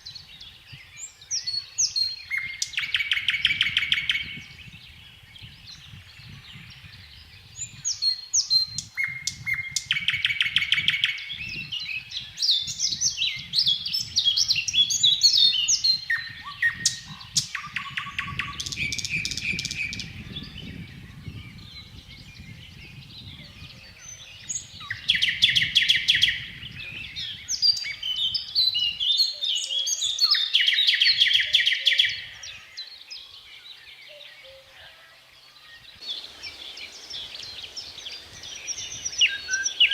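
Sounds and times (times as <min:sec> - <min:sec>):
nightingale singing: 0:00.0 - 0:39.9.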